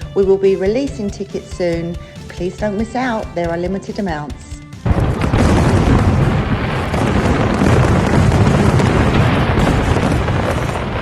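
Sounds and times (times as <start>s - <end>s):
fireworks bangs: 2.4s - 11.0s.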